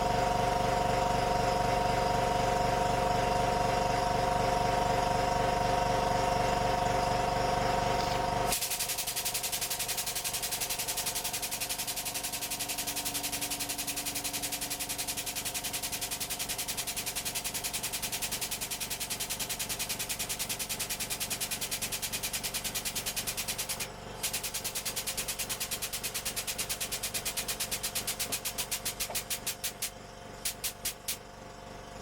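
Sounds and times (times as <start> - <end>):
steady machine hum: 0.0 - 32.0
hydraulic press pulsing: 8.0 - 31.2.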